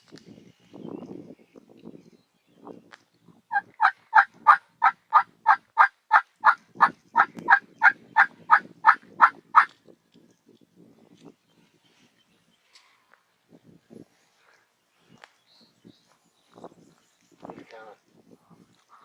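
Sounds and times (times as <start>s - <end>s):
turkey yelps: 3.5s - 9.7s.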